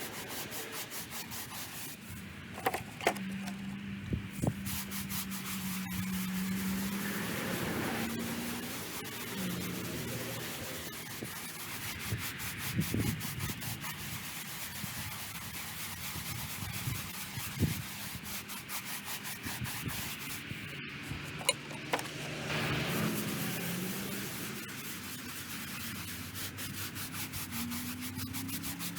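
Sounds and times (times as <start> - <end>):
brush scrubbing stone: 0.0 - 28.9.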